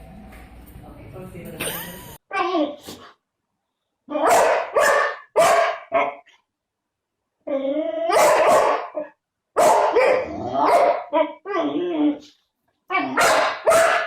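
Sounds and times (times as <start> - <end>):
dog barking: 4.1 - 6.3, 8.1 - 11.4, 13.0 - 14.0.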